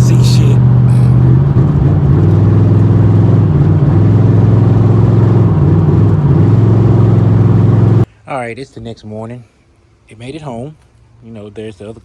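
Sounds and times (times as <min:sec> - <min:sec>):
car engine droning at cruising speed: 0:00.0 - 0:08.1.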